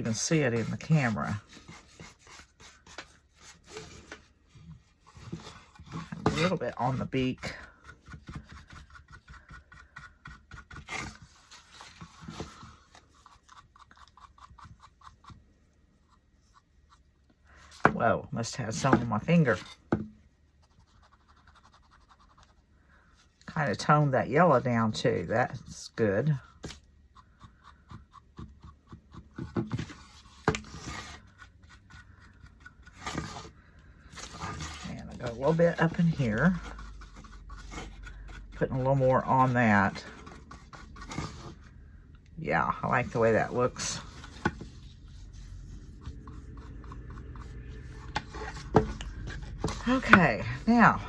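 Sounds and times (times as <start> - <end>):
brush scrubbing wood: 0.0 - 4.1, 34.2 - 41.4
loud brush scrape: 0.0 - 4.2
brush scrubbing and dabbing: 0.0 - 41.8, 42.4 - 51.0.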